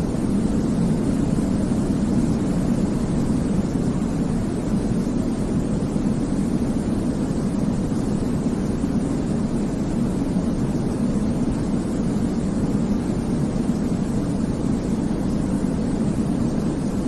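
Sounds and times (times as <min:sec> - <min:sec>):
white noise hiss: 0:00.0 - 0:17.0.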